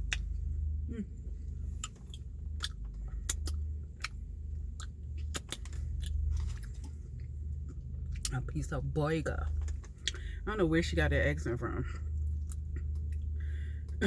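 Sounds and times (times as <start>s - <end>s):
steady low hum: 0.0s - 14.0s
close-up chewing and smacking: 1.6s - 8.4s, 12.0s - 14.0s.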